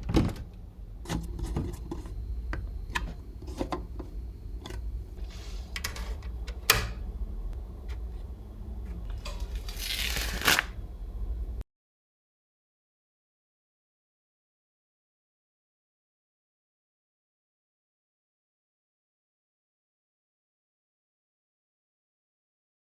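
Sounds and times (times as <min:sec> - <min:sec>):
rubbing and scraping: 0:01.0 - 0:02.3.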